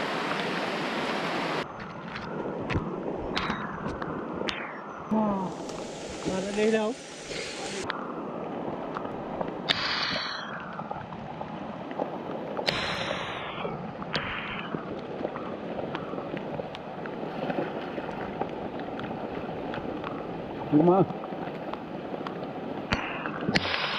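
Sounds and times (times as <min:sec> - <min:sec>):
creek water flowing: 0:00.0 - 0:23.9.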